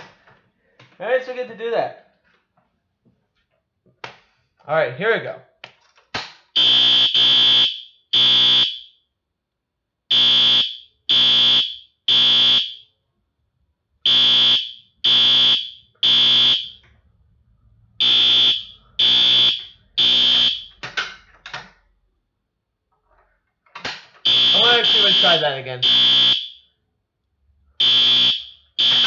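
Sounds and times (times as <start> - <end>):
fire alarm horn blasts: 6.6 - 9.0, 10.1 - 13.0, 14.0 - 16.8, 18.0 - 20.7, 24.3 - 26.7, 27.8 - 29.0.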